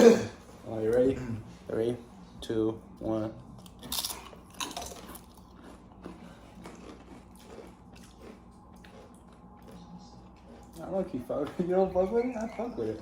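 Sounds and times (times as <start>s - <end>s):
potato chips crunching: 3.6s - 10.9s.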